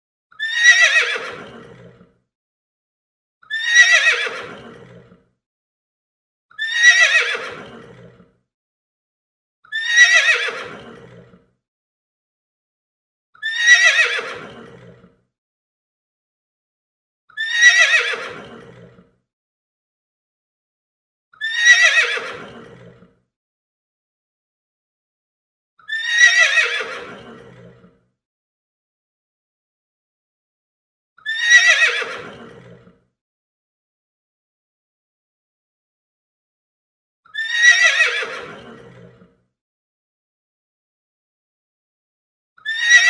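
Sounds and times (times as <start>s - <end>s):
horse neighing: 37.5s - 38.9s.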